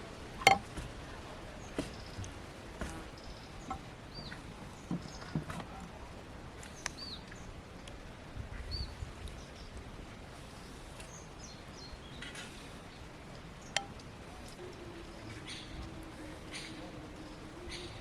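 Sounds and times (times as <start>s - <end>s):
sharp clicks or knocks: 0.4s - 0.7s
birds chirping: 1.5s - 5.6s, 10.5s - 18.0s.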